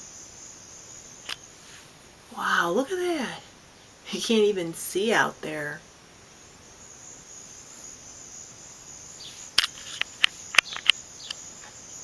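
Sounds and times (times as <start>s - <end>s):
crickets chirring: 0.0s - 12.0s
sharp clicks: 9.6s - 11.4s.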